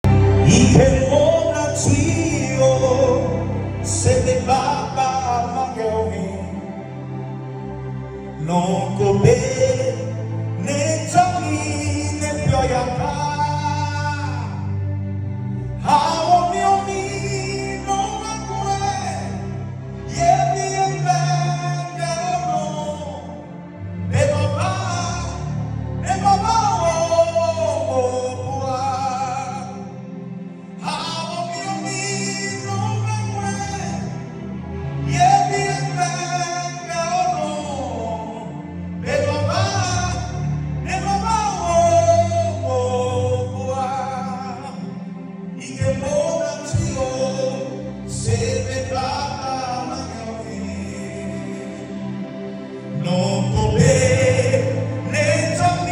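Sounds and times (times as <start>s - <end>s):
band accompaniment: 0.0s - 6.8s, 8.4s - 19.0s, 45.6s - 55.9s
person singing: 0.0s - 6.9s, 15.8s - 23.4s
live band music: 0.0s - 7.0s
instrumental backing: 0.0s - 55.9s.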